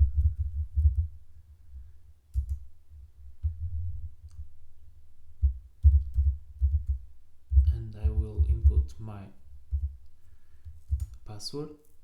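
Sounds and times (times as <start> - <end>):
low irregular thuds: 0.0 - 1.2, 1.8 - 4.5, 5.4 - 10.0, 10.7 - 11.2.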